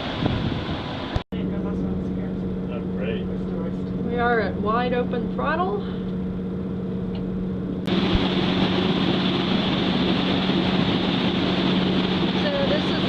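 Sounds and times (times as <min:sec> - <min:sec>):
diesel engines droning: 0:01.4 - 0:13.0
loud steady rushing noise: 0:07.7 - 0:13.0.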